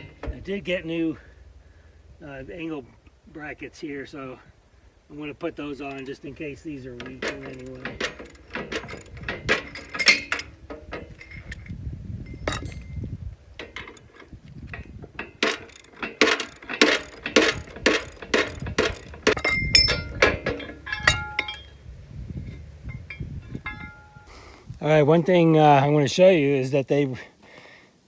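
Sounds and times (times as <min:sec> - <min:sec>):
metal brackets and bolts clinking: 0:00.0 - 0:00.8, 0:05.8 - 0:24.5
short metallic rings: 0:00.0 - 0:02.2, 0:05.8 - 0:14.3, 0:14.9 - 0:24.6.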